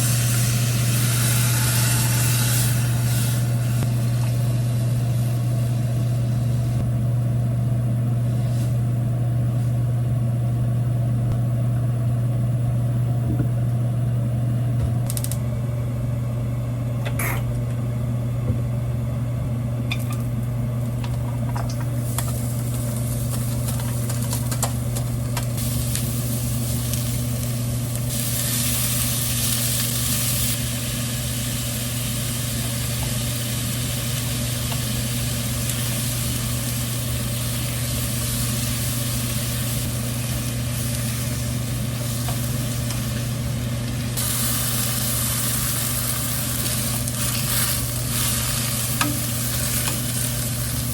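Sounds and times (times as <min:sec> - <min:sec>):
food sizzling in a frying pan: 0:00.0 - 0:06.8, 0:21.9 - 0:50.9
steady low hum: 0:00.0 - 0:50.9.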